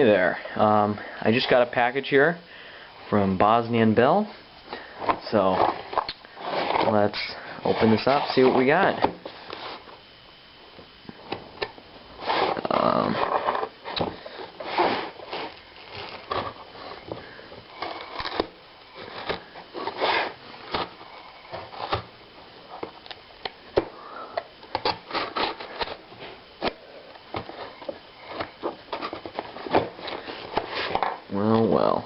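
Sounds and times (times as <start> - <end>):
packaging rustling and scraping: 4.7 - 10.1, 11.2 - 23.1, 24.7 - 31.3.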